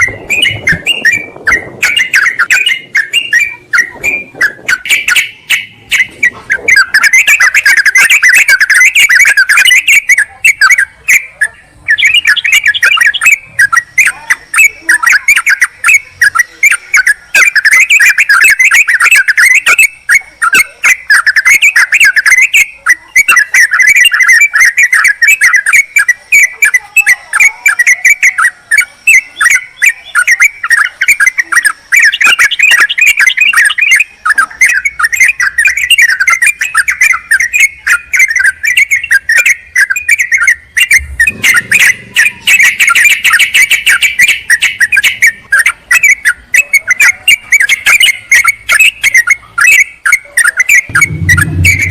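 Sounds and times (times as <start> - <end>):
bulbuls chattering: 0.0 - 51.9.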